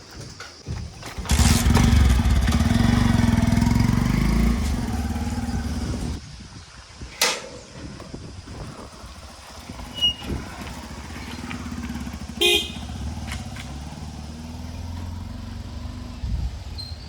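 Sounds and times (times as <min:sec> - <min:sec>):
diesel engine running: 0:01.2 - 0:06.2, 0:08.5 - 0:17.0
vehicle horn toot: 0:12.2 - 0:13.2.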